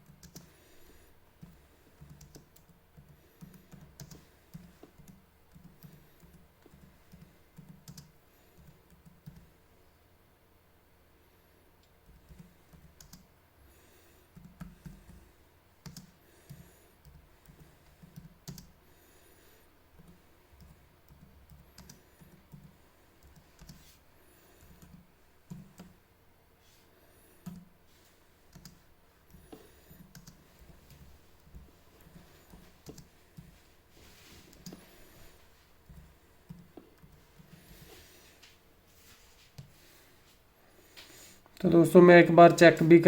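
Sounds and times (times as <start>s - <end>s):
typing on a laptop keyboard: 0.0s - 0.6s, 1.4s - 9.5s, 12.0s - 13.3s, 14.3s - 15.2s, 15.8s - 18.8s, 20.0s - 23.9s, 24.6s - 26.0s, 27.4s - 27.7s, 28.5s - 33.6s.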